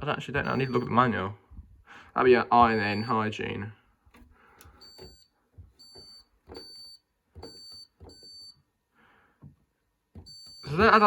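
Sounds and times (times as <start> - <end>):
washing machine panel beeps: 0.4 - 1.1, 2.4 - 3.4, 4.6 - 8.7, 10.1 - 11.0.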